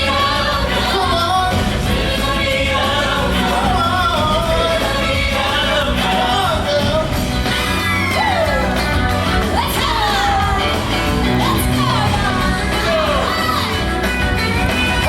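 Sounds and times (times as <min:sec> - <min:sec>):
live rock and roll band: 0:00.0 - 0:15.0
shouts: 0:07.6 - 0:08.8.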